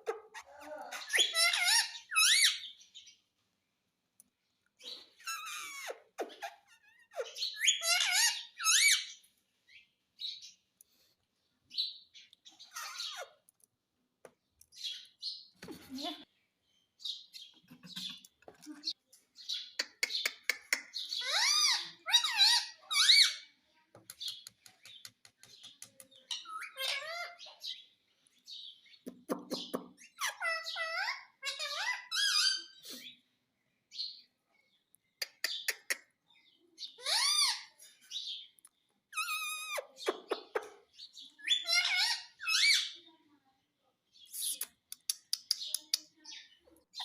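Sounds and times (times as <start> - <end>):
parrot squawking chirps: 0.0 - 2.7, 5.2 - 9.2, 12.6 - 13.4, 21.0 - 23.5, 26.3 - 27.4, 30.0 - 32.8, 36.9 - 37.8, 39.2 - 40.6, 41.4 - 43.0.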